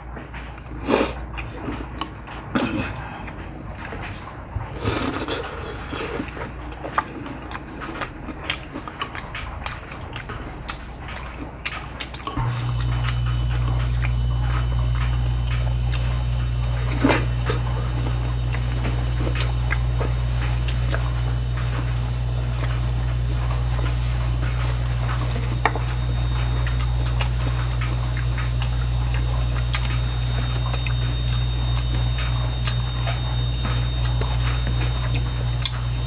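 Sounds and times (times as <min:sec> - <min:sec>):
low machine hum: 0:09.5 - 0:36.0.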